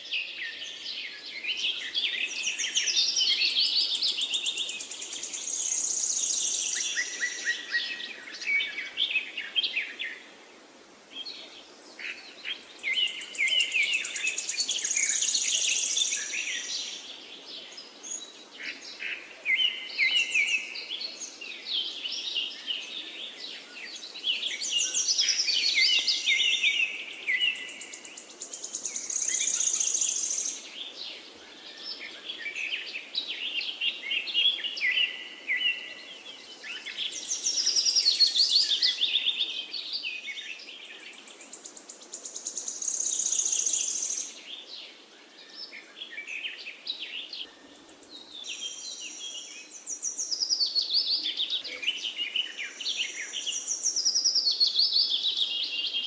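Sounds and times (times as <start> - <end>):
faint hiss: 0.0 - 56.0
birds chirping and singing: 12.1 - 56.0.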